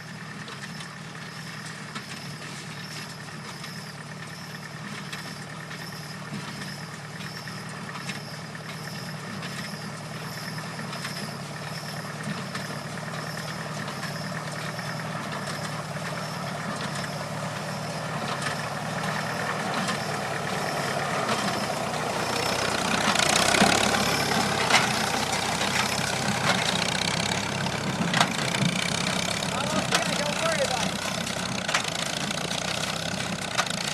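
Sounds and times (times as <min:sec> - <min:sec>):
tractor engine running: 0:00.0 - 0:33.9
baler clattering: 0:14.6 - 0:33.9.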